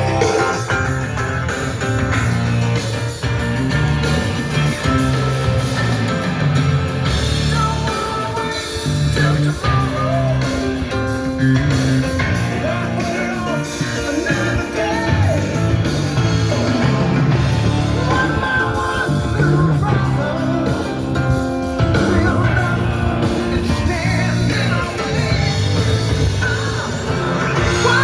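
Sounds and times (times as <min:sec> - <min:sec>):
bass guitar: 0:00.0 - 0:28.0
electric guitar: 0:00.0 - 0:28.0
person singing: 0:07.1 - 0:28.0.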